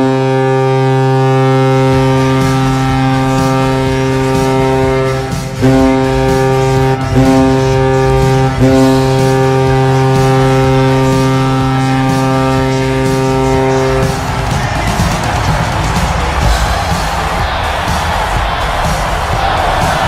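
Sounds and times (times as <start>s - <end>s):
goal horn blasts: 0.0s - 20.0s.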